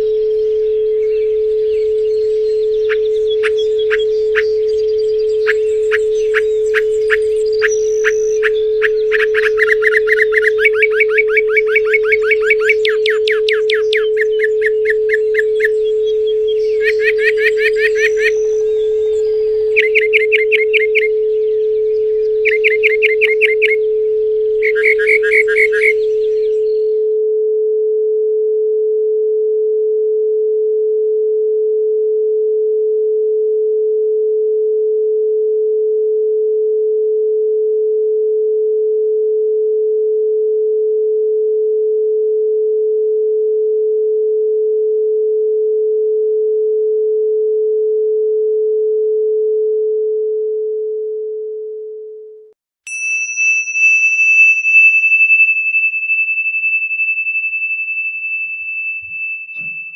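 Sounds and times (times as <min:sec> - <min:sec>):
higher pure tone: 0:00.0 - 0:27.2, 0:52.9 - 0:59.9
steady sine tone: 0:00.0 - 0:52.3, 0:52.9 - 0:59.9.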